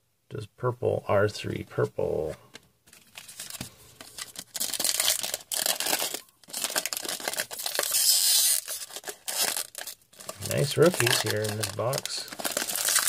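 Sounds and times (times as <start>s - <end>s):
wrapper crinkling and tearing: 2.9s - 13.0s.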